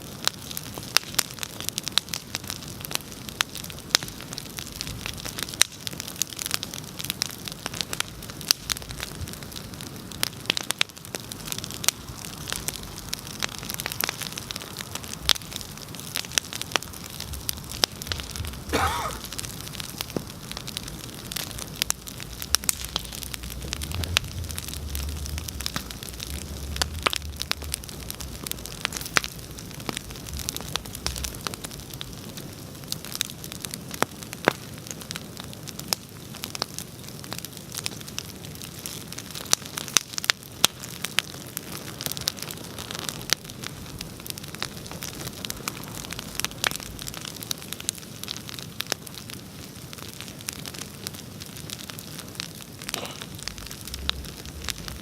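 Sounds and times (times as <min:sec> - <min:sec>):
bonfire crackling and hissing: 0:00.0 - 0:55.0
low rumble: 0:22.2 - 0:28.8, 0:53.3 - 0:55.0.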